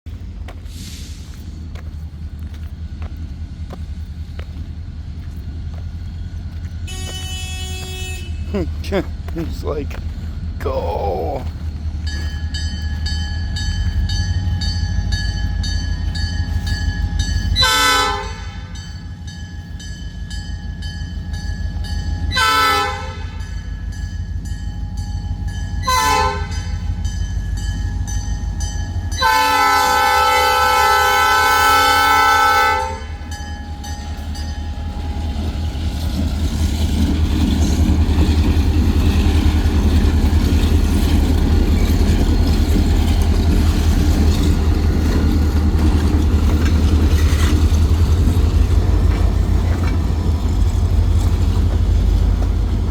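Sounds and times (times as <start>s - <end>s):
low train rumble: 0.0s - 52.9s
locomotive horn blasts: 6.8s - 8.5s, 17.5s - 18.8s, 22.2s - 23.6s, 25.8s - 26.9s, 29.1s - 33.4s.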